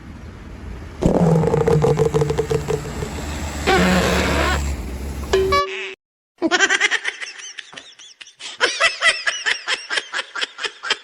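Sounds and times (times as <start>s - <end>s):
high-pitched laughing: 5.7s - 11.0s.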